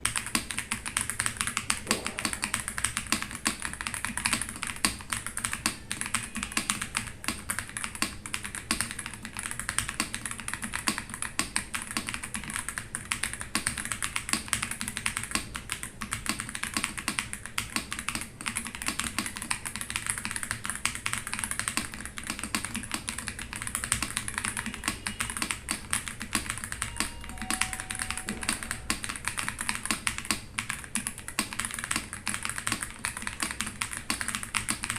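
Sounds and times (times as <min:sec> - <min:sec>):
fast typing on mechanical keyboard: 0:00.0 - 0:34.9.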